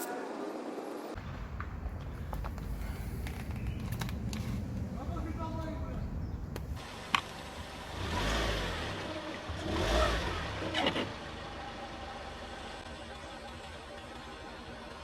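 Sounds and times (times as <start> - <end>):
car creeping forward: 1.6 - 15.0
crackle of something crushed: 2.0 - 4.8.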